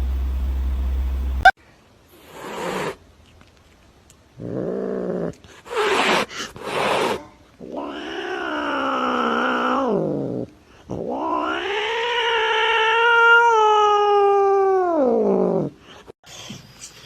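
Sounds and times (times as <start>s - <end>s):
cat yowling: 11.0s - 15.6s.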